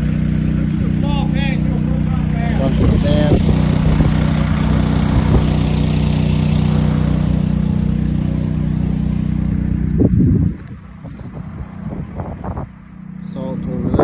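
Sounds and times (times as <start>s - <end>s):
engine running steadily: 0.0s - 14.0s.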